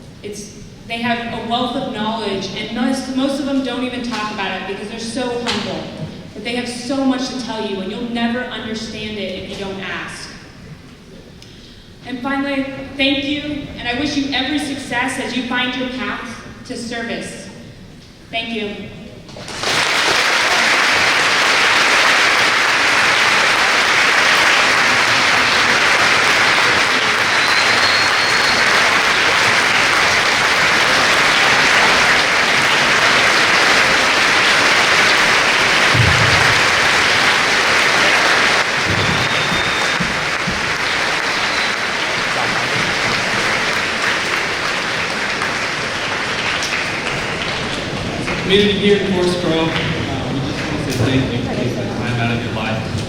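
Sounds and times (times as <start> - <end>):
large audience applauding: 19.4 - 48.6.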